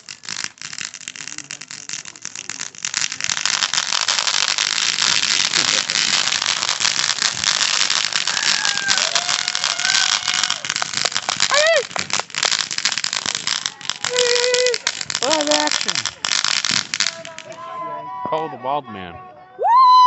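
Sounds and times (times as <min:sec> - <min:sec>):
fireworks crackling: 0:00.0 - 0:18.5.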